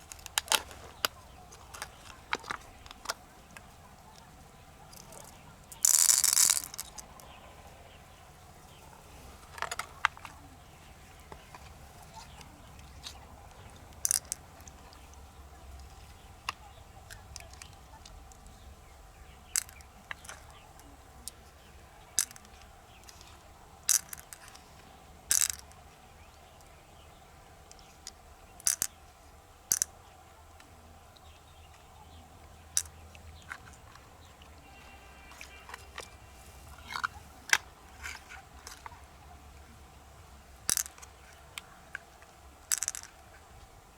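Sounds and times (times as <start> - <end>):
mussel shells cracking: 0.0 - 7.5, 8.7 - 18.6, 19.4 - 21.4, 22.0 - 24.7, 25.3 - 25.8, 27.7 - 29.0, 29.6 - 30.0, 35.3 - 39.0, 40.6 - 43.4
faint low hum: 0.0 - 43.9.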